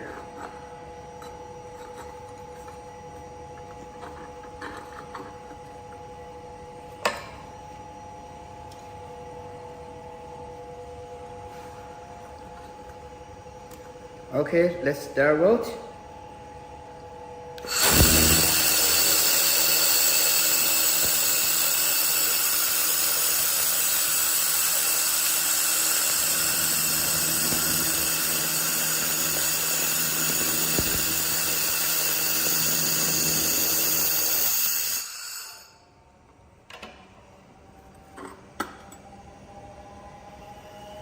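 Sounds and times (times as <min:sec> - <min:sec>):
laser welder hissing and whining: 0:17.6 - 0:35.8.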